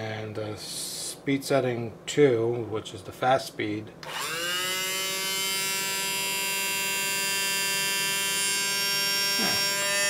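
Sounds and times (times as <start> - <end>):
immersion blender motor whine: 4.0 - 10.0.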